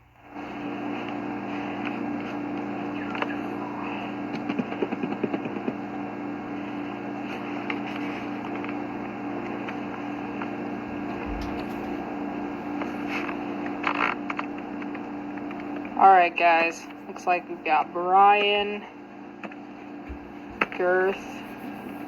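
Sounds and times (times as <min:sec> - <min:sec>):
low mechanical hum: 0:00.0 - 0:22.0.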